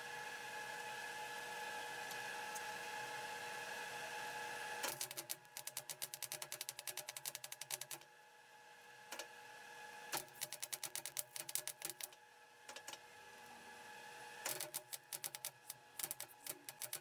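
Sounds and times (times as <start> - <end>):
rapid mechanical clicking: 4.9 - 8.0, 10.2 - 12.2, 14.5 - 17.0.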